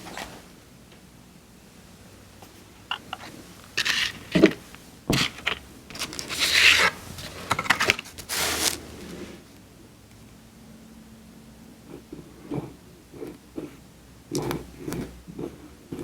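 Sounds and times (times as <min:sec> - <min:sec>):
paper tearing and crinkling: 0:05.1 - 0:09.0.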